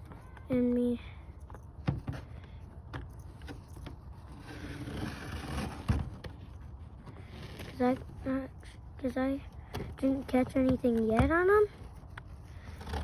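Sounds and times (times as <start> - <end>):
rough scraping: 3.3 - 8.6, 10.0 - 13.0.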